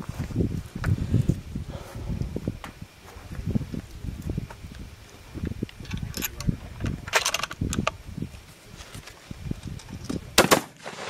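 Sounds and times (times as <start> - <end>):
wind buffeting microphone: 0.0 - 10.4
sharp loud double crack: 10.4 - 11.0.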